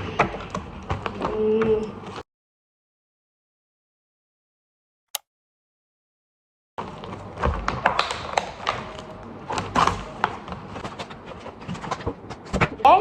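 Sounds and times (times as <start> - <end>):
taps and knocks of packaging: 7.4 - 9.0.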